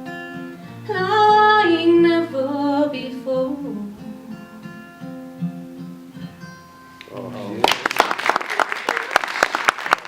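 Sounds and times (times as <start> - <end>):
guitar chords ringing: 0.0 - 7.2.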